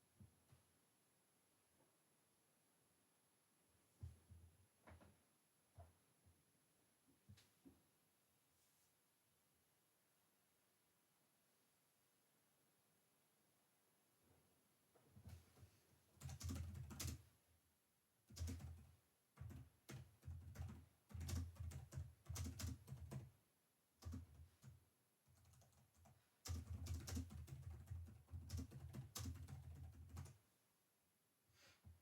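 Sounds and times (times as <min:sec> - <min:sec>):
computer keyboard typing: 0:16.2 - 0:17.2, 0:18.3 - 0:23.3, 0:24.0 - 0:30.4.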